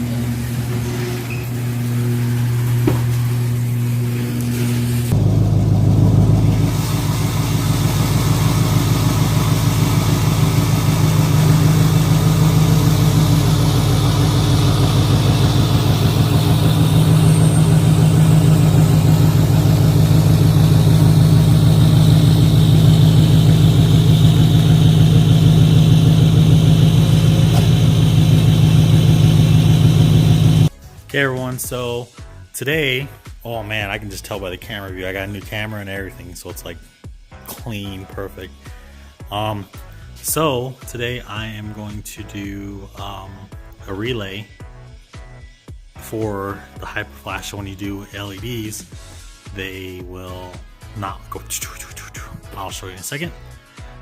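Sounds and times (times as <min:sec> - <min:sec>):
pickup truck engine idling: 0:05.2 - 0:30.7.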